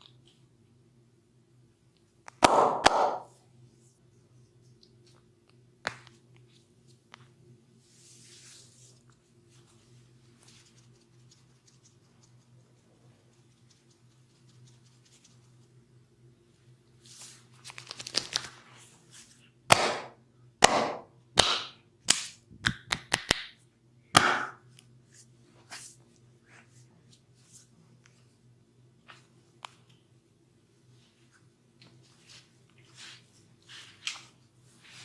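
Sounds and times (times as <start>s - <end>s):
hands slapping bare skin: 2.3s - 3.3s, 19.7s - 23.6s, 24.2s - 24.6s.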